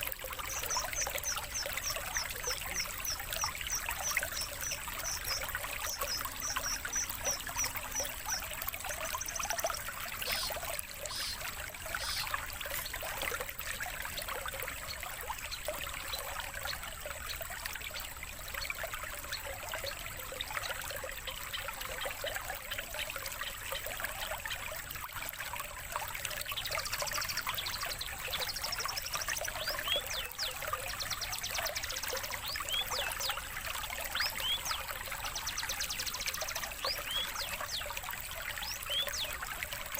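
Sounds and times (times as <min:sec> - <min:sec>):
songbird chirps: 0:00.0 - 0:13.1, 0:26.4 - 0:39.9
water trickling: 0:00.0 - 0:39.9.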